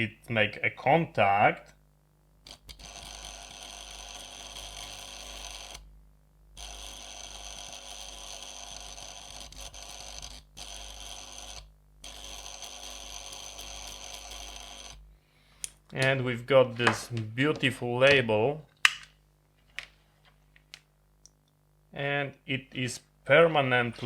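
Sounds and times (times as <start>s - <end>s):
electric arc engraver buzzing: 2.5s - 5.9s, 6.5s - 15.1s.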